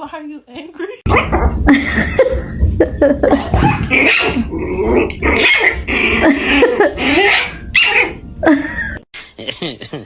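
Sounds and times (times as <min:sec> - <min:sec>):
dog growling: 0:03.8 - 0:07.4.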